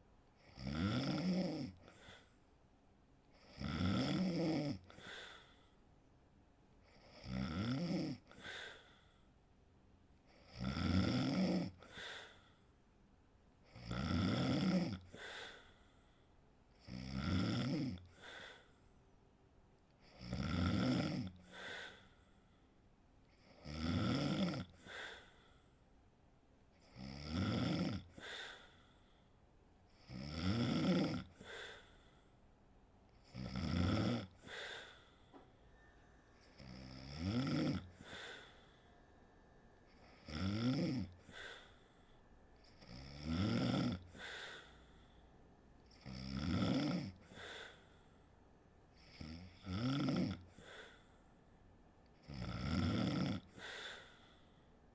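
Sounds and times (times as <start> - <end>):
woman snoring: 0.4 - 2.3, 3.4 - 5.5, 6.8 - 8.9, 10.3 - 12.4, 13.7 - 15.7, 16.8 - 18.7, 20.0 - 22.1, 23.4 - 25.4, 26.8 - 28.8, 30.0 - 31.9, 33.2 - 48.0, 48.9 - 51.0, 52.2 - 54.2.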